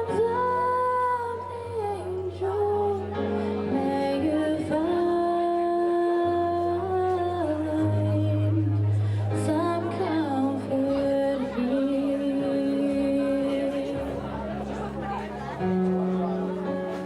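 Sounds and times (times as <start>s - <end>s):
woman singing slow song: 0.0s - 14.6s.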